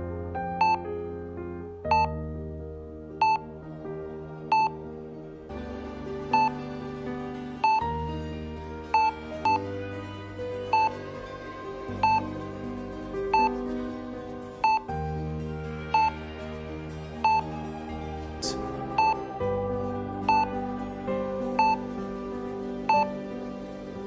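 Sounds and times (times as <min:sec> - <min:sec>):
slow synth chords: 0:00.0 - 0:24.0.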